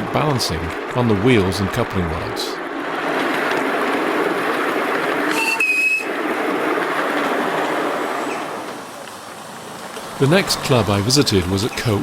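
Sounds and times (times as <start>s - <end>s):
miniature steam locomotive running: 0.0s - 12.0s
short high tone: 5.3s - 6.1s.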